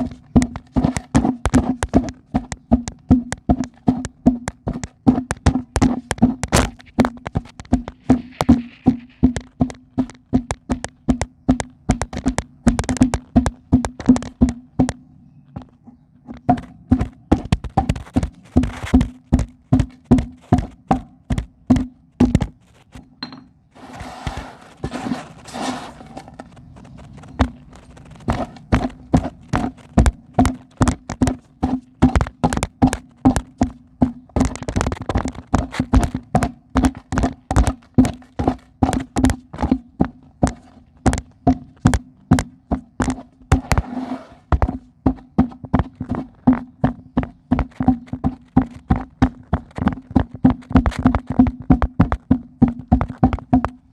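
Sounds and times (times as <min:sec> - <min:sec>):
gritty crumbling: 0:22.6 - 0:33.2.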